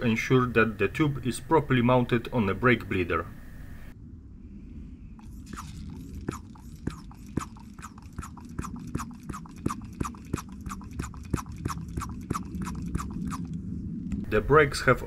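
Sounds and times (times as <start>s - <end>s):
brake bleeding pump strokes: 5.2s - 13.6s.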